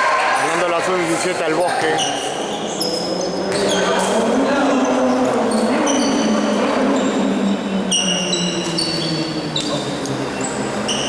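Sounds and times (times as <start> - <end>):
indistinct voices: 0.3 - 11.0
basketball shoes squeaking: 1.6 - 4.0, 5.5 - 6.3, 7.9 - 11.0.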